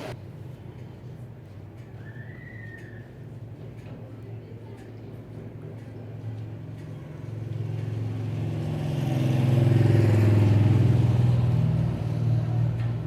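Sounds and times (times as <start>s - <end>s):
vehicle engine passing by: 7.2s - 13.0s.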